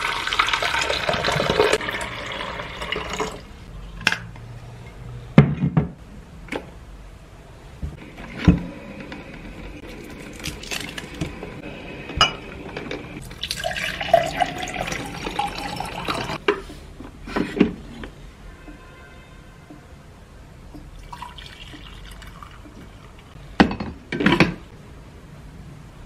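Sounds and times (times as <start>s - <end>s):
liquid pouring into a glass: 13.2s - 16.4s, 21.0s - 22.7s.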